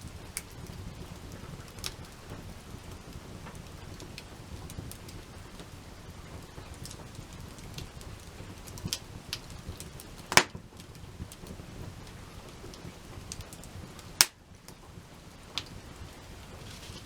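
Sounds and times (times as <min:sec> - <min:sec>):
fire hissing softly: 0:00.0 - 0:17.0
wood fire crackling: 0:00.0 - 0:17.0
loud sharp pops: 0:10.3 - 0:10.7.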